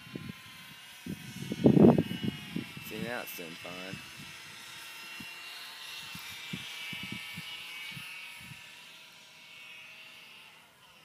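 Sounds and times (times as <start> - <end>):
model plane motor whining: 0.0 - 11.0
wind thumping on microphone: 1.0 - 2.9.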